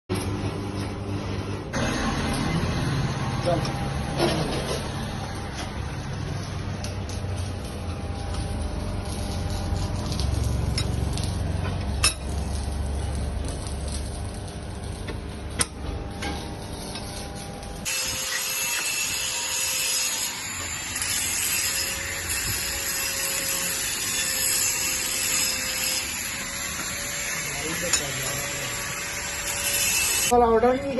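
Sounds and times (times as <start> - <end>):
metal-working machinery humming: 0.1 - 30.9.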